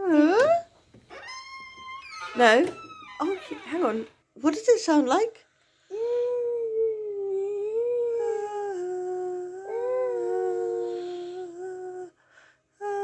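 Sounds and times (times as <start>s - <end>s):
person humming a long note: 6.9s - 12.1s.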